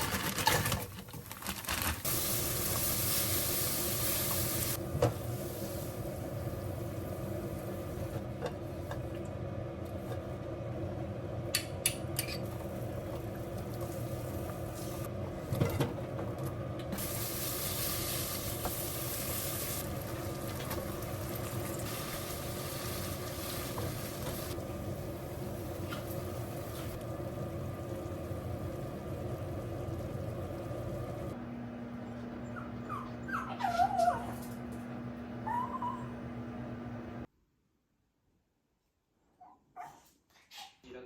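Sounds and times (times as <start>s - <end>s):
food sizzling in a pan: 2.0s - 8.2s, 17.0s - 31.3s.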